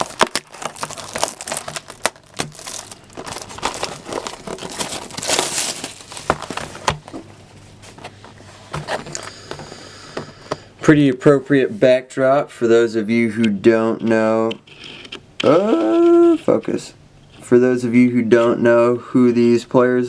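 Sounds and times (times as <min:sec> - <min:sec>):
packaging crinkling and rustling: 0:00.0 - 0:09.4.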